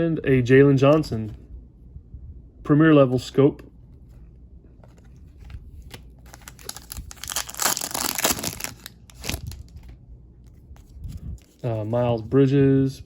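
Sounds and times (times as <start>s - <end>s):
foil pack crinkling and tearing: 5.9s - 9.9s.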